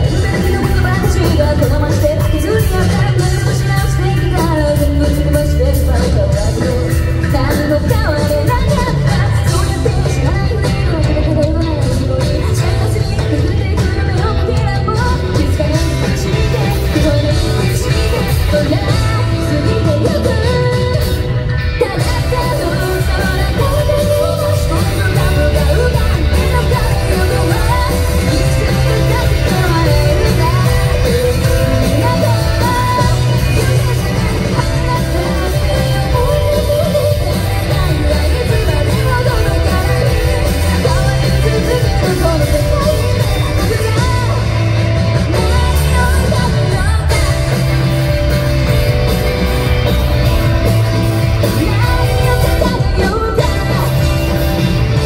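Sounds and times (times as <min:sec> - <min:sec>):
female singer: 0:00.0 - 0:55.0
rock band playing live: 0:00.0 - 0:55.0.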